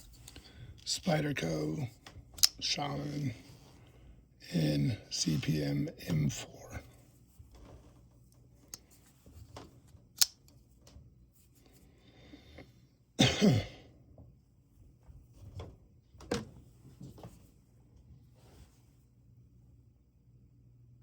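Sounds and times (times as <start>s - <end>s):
folding knife clicks: 10.2s - 10.4s
person clearing throat: 13.2s - 13.9s.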